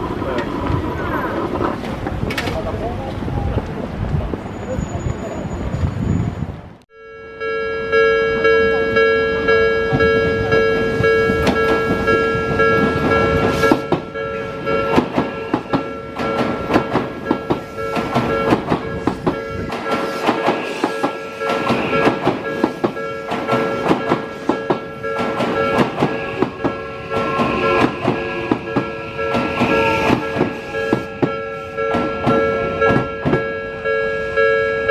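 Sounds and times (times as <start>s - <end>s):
train wheels clacking on rail joints: 0.0s - 3.2s, 9.9s - 33.5s
level-crossing warning bell: 6.9s - 34.9s.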